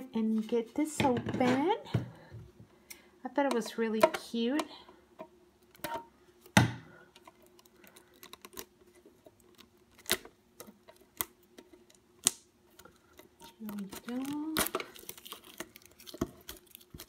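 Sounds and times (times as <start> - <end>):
cardboard and plastic packaging handled: 7.1 - 17.0.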